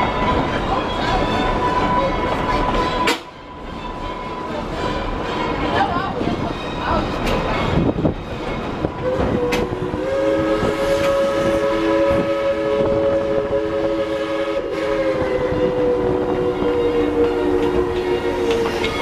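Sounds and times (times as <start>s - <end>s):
train wheels clattering on rails: 0.0s - 9.9s, 10.6s - 12.2s, 16.4s - 19.0s
steam locomotive whistle: 9.0s - 19.0s.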